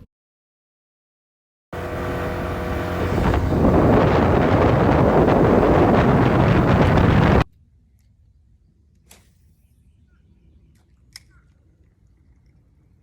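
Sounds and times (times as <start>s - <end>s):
boat motor running: 1.8s - 7.4s
wind on microphone: 1.9s - 7.5s.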